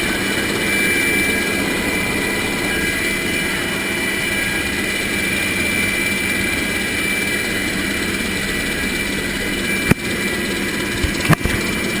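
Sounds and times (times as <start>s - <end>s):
helicopter turbine whine and rotor: 0.0s - 12.0s
sharp click: 11.1s - 11.6s.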